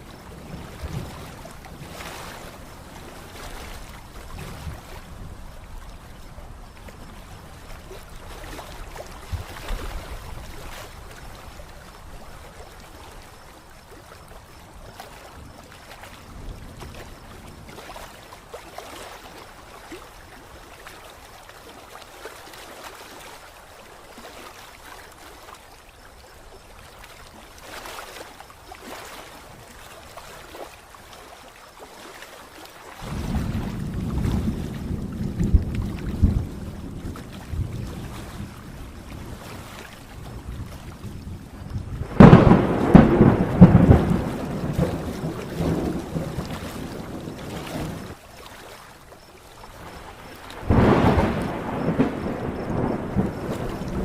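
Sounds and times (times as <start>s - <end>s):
gusty wind buffeting microphone: 33.0s - 48.2s
low rumbles from gusts: 33.0s - 48.2s, 49.9s - 54.0s.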